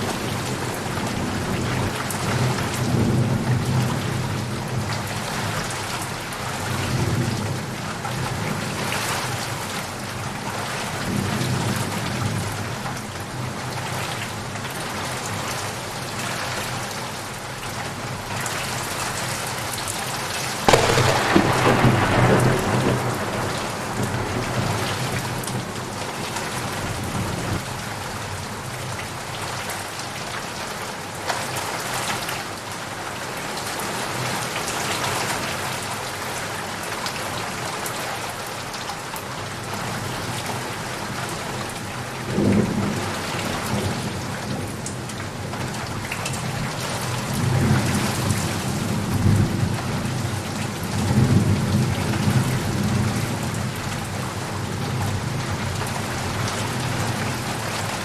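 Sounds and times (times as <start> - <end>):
heavy rain: 0.0 - 58.0
thunder rumbling: 20.7 - 27.6.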